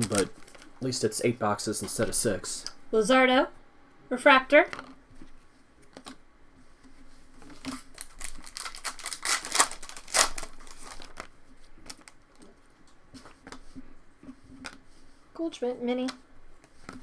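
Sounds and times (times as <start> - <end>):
cards and packaging crinkling: 0.0 - 2.7, 7.4 - 12.6.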